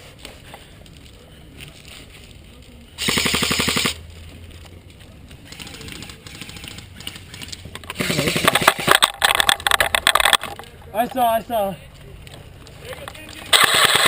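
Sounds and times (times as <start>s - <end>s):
airsoft gun firing bursts: 3.0s - 4.0s, 5.4s - 9.0s, 13.5s - 14.0s.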